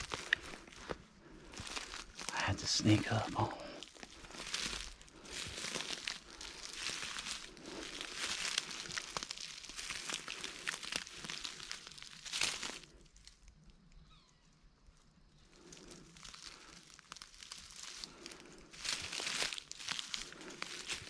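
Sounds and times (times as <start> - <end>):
rustling dry leaves and brush: 0.0 - 13.6, 15.4 - 21.0.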